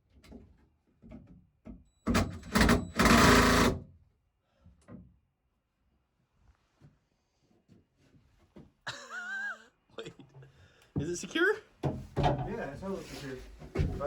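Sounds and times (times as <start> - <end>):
power screwdriver driving screws: 2.3 - 3.8.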